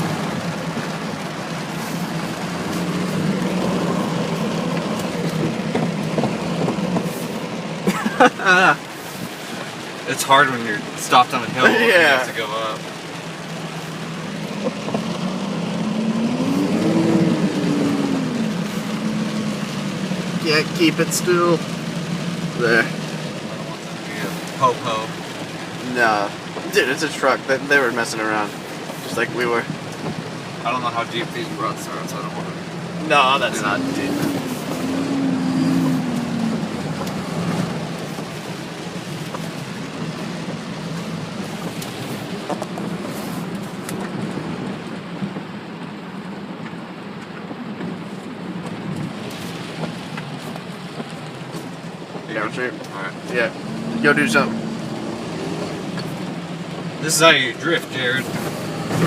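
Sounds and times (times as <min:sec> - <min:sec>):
diesel engine revving: 0:00.0 - 0:45.7, 0:48.3 - 0:59.0
diesel truck engine droning: 0:47.9 - 0:59.0.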